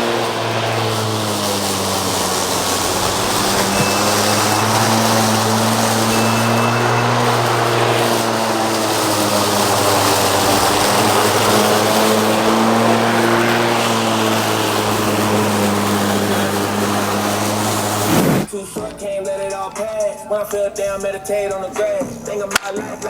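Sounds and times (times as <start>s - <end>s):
lawnmower engine running: 0.0s - 23.0s
music: 2.0s - 13.2s, 18.4s - 23.0s.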